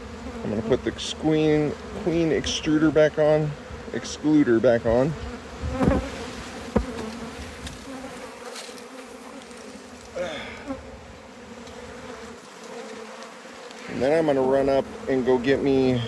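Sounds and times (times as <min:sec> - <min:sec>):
bees buzzing: 0:00.0 - 0:16.0
hive equipment knocks: 0:05.6 - 0:06.1, 0:06.7 - 0:07.8.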